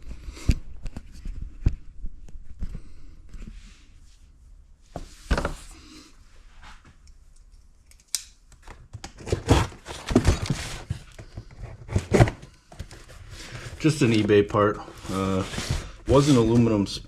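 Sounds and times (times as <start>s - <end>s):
packaging scraping and rustling: 9.2s - 17.0s.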